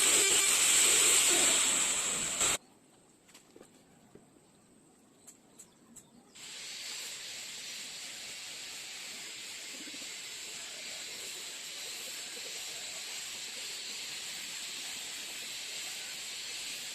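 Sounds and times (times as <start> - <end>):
steady hiss: 0.0 - 2.6, 6.4 - 16.9.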